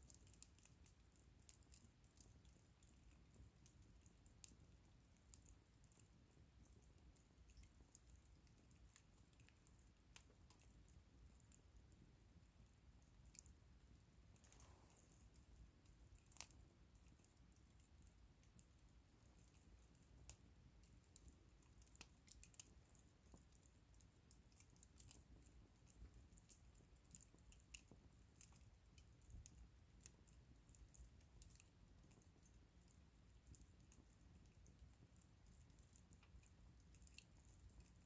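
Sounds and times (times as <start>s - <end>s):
bonfire crackling: 0.0s - 38.0s.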